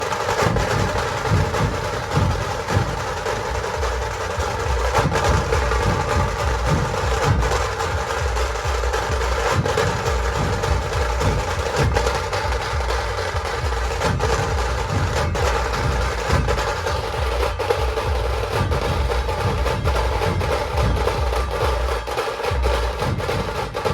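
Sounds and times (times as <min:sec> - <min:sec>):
deep dhol drum beats: 0:00.0 - 0:23.9
rapid rolling tasha drums: 0:00.0 - 0:23.9.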